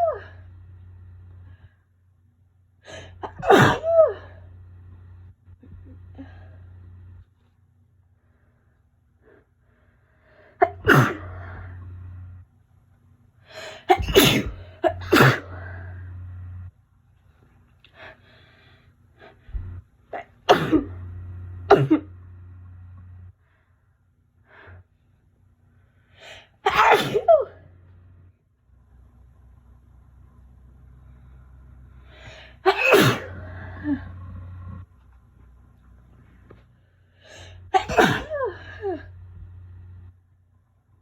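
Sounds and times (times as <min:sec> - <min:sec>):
woman sneezing: 0:03.2 - 0:04.3, 0:10.6 - 0:11.4, 0:13.8 - 0:15.6, 0:20.2 - 0:21.0, 0:26.6 - 0:27.6, 0:32.7 - 0:34.0, 0:37.7 - 0:39.0.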